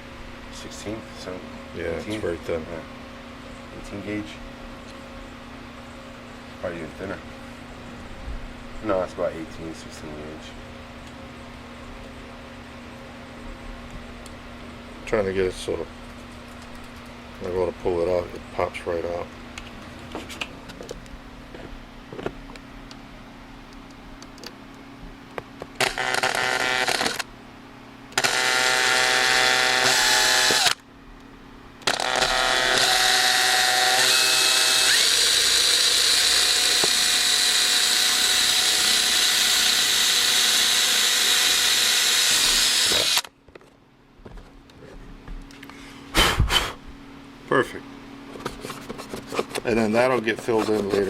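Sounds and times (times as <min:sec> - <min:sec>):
power tool whining on plastic: 0:25.8 - 0:27.3, 0:28.2 - 0:30.8, 0:31.8 - 0:43.3.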